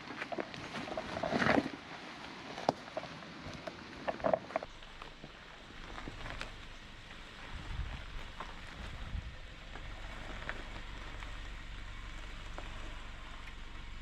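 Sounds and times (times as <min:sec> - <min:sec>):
low engine rumble: 0:01.9 - 0:14.0
stones knocking and crunching: 0:02.5 - 0:11.4.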